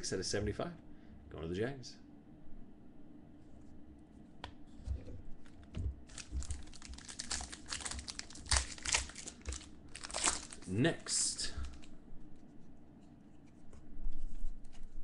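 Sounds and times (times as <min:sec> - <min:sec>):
card pack wrapper crinkling: 0:06.1 - 0:11.9.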